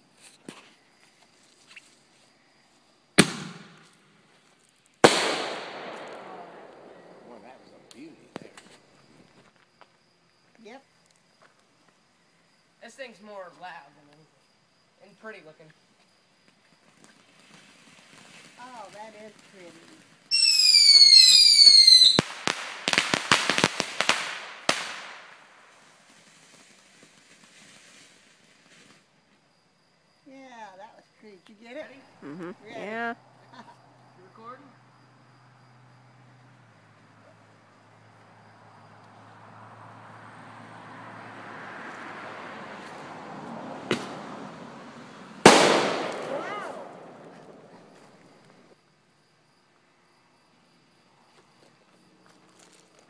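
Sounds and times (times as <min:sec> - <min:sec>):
firework bang: 0:03.2 - 0:04.2, 0:05.0 - 0:08.8, 0:43.8 - 0:44.4, 0:45.2 - 0:48.3
firework bangs: 0:03.2 - 0:04.2, 0:05.0 - 0:08.9, 0:20.3 - 0:29.0, 0:42.2 - 0:48.7
firework whistling: 0:05.0 - 0:08.8, 0:16.9 - 0:29.1, 0:42.8 - 0:48.7.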